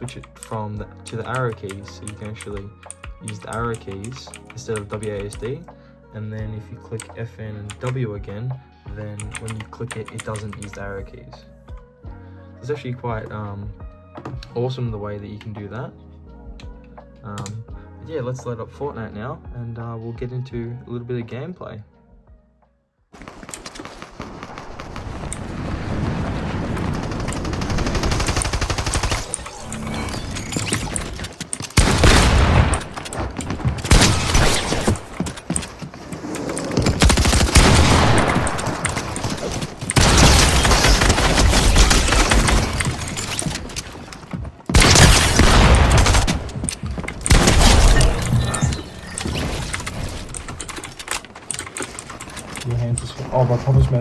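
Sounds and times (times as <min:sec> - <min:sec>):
rapid gunfire bursts: 0:26.5 - 0:29.6, 0:37.0 - 0:43.0.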